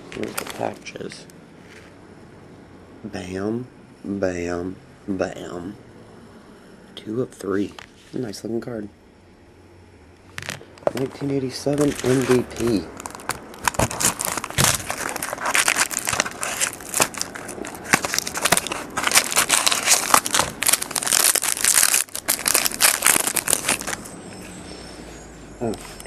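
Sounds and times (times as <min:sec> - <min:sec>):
plastic wrapping crinkling: 0:00.1 - 0:01.0, 0:10.4 - 0:24.1.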